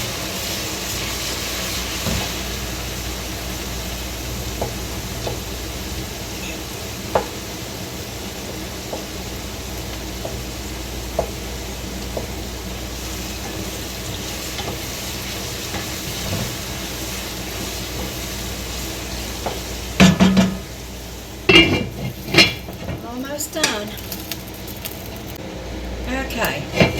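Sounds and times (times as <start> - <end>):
vegetables sizzling in oil: 0.0 - 26.9
utensil clattering against pot: 19.4 - 20.7, 21.5 - 24.1.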